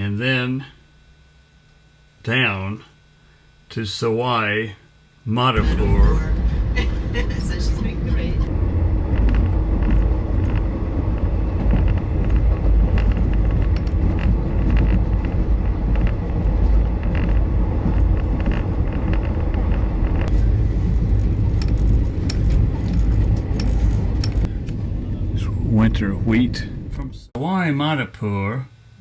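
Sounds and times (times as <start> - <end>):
vehicle rumbling: 5.6 - 27.3.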